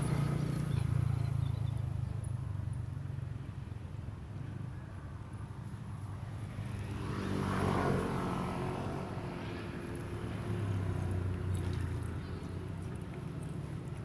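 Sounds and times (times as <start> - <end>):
vehicle engine passing: 6.2 - 14.0.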